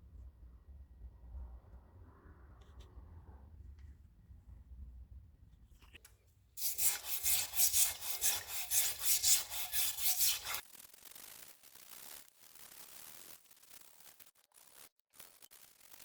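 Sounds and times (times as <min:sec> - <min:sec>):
file scraping on metal: 0:06.6 - 0:10.6.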